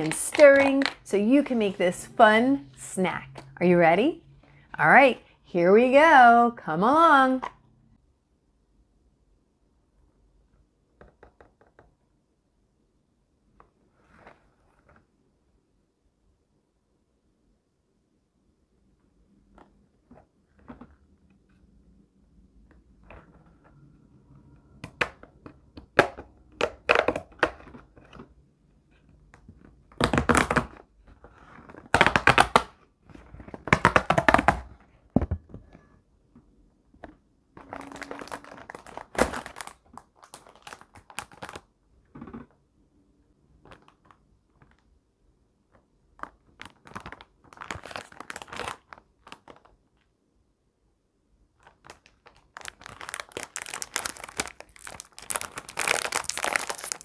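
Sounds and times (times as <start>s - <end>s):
packaging crinkling and tearing: 37.6s - 41.7s, 46.2s - 49.8s, 51.6s - 57.0s.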